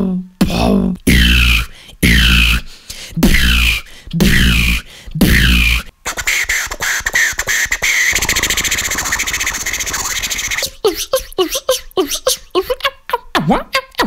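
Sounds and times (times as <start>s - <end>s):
beatbox bass hits with sweeps: 0.4s - 10.8s
beatbox clicks: 0.4s - 14.0s.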